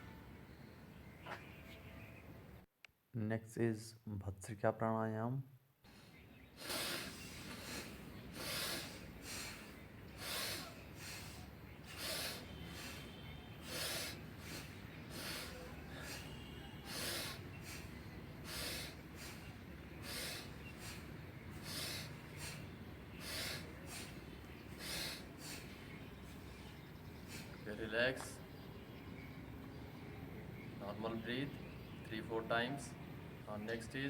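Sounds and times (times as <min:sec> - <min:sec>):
forceful breathing through nose: 0:05.9 - 0:27.6.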